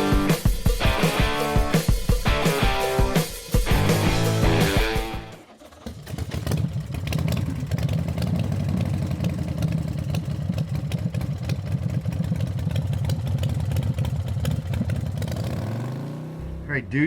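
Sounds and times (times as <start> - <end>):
motorcycle engine idling: 3.7 - 16.7.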